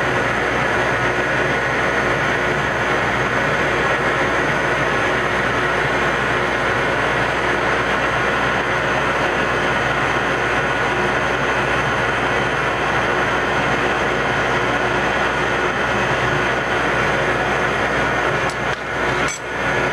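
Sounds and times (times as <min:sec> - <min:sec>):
machine tool running with whining tones: 0:00.0 - 0:19.9.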